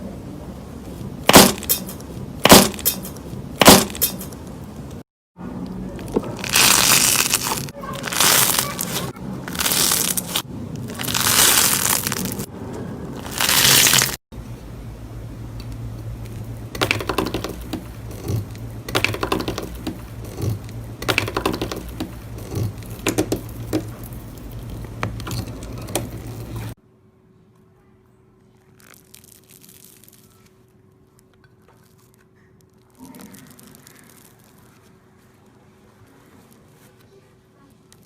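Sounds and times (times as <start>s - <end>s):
slime crunching and crackling: 5.9s - 12.5s, 13.2s - 14.2s, 28.6s - 30.5s, 31.8s - 34.9s.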